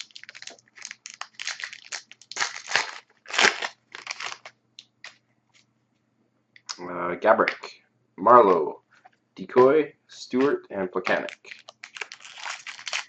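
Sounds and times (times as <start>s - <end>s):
wrapper tearing and crinkling: 0.0s - 5.2s, 11.1s - 13.0s.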